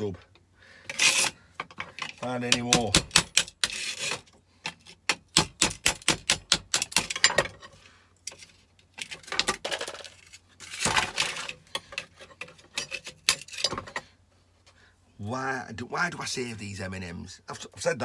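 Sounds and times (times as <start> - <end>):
metal scrap pieces clinking: 6.9 - 14.0.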